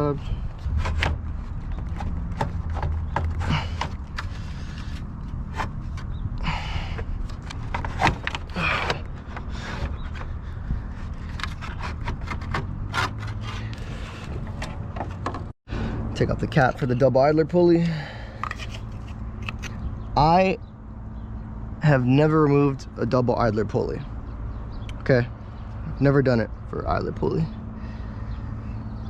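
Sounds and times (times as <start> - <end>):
knocks clicks and scraping: 0.0 - 15.6, 16.4 - 17.3, 18.3 - 20.0.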